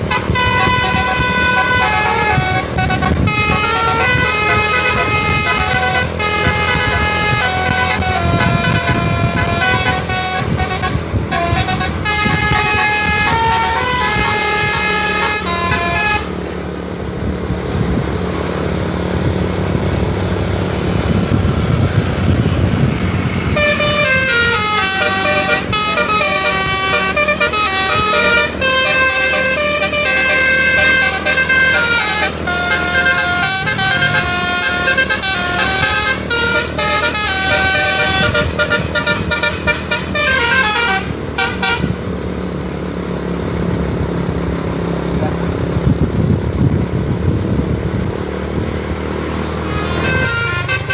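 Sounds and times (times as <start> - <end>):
musical air horn melody: 0.0 - 16.6, 23.5 - 42.0, 49.6 - 50.9
bus engine running: 0.0 - 50.9.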